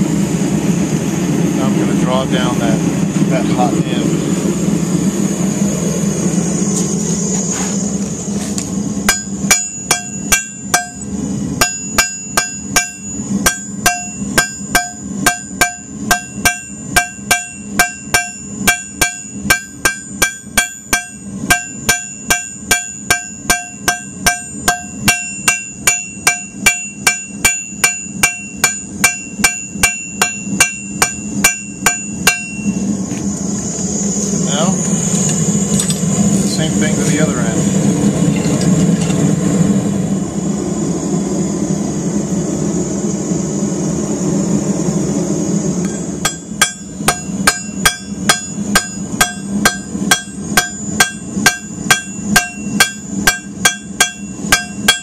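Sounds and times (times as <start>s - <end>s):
steady hum: 0.0s - 55.0s
hammer striking steel on anvil: 9.0s - 32.8s, 45.8s - 55.0s.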